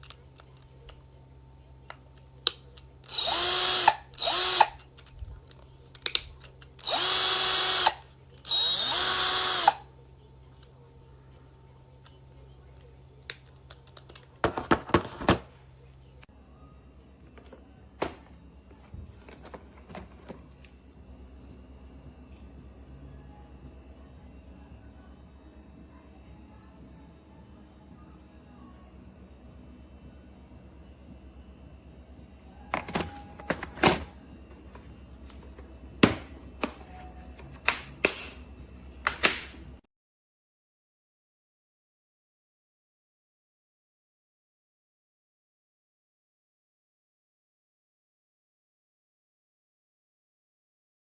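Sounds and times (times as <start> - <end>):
faint low hum: 0.0 - 39.8
hard objects clicking and knocking: 32.7 - 36.8.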